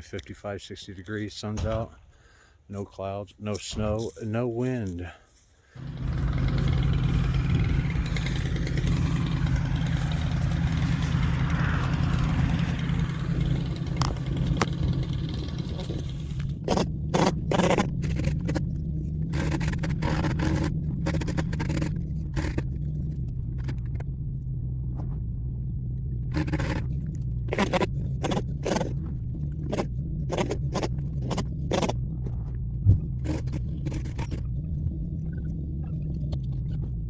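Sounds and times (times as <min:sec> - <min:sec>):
scraping and rustling of branches: 0:03.6 - 0:16.6
small engine running: 0:05.8 - 0:24.9, 0:26.1 - 0:37.0.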